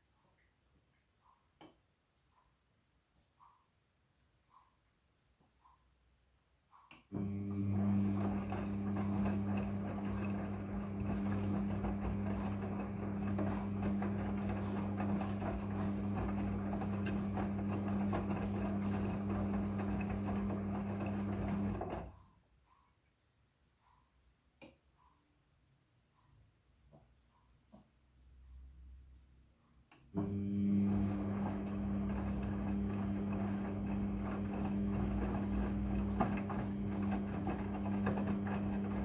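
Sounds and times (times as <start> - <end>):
washing machine hum and whirr: 7.1 - 22.3, 30.2 - 39.0.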